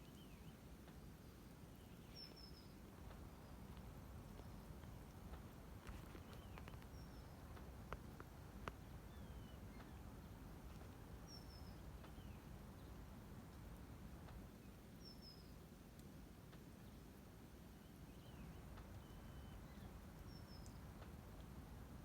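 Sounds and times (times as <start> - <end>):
faint clicks: 0.0 - 1.6, 2.2 - 12.3, 13.4 - 14.6, 15.9 - 16.7, 18.4 - 21.6
bird chirping faintly: 0.0 - 15.6, 17.8 - 21.6.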